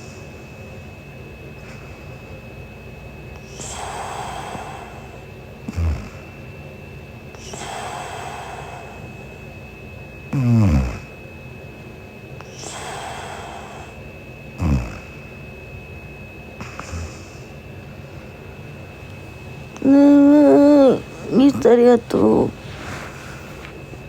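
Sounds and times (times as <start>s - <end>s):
woman snoring: 3.4s - 6.3s, 10.3s - 11.2s, 14.6s - 15.2s, 16.6s - 17.5s, 19.8s - 23.4s
soft breaths: 3.4s - 6.4s, 7.3s - 9.4s, 12.4s - 14.0s, 16.6s - 24.0s.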